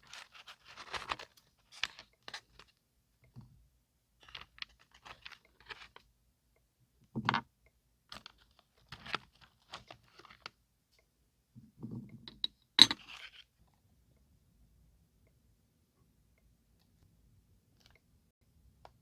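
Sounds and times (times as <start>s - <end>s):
paper rustling: 0.0s - 2.7s.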